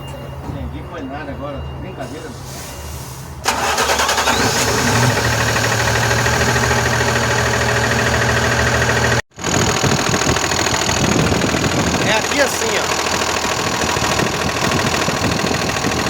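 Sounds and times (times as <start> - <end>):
diesel truck engine running: 3.4 - 16.0.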